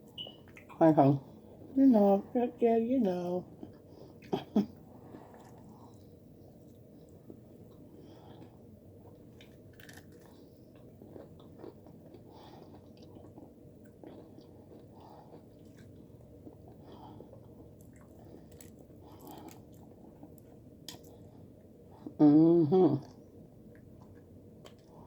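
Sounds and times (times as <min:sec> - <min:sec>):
low steady hum: 0:00.0 - 0:25.0
chewing and biting food: 0:05.0 - 0:21.3
small crunches: 0:09.3 - 0:13.2, 0:17.8 - 0:21.2.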